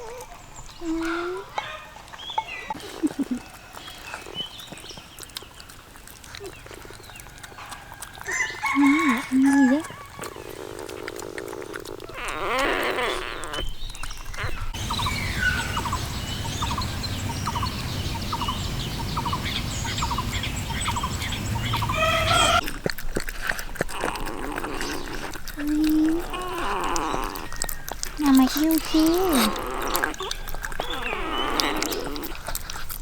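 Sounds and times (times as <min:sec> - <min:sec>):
chickens clucking: 0:14.8 - 0:22.6.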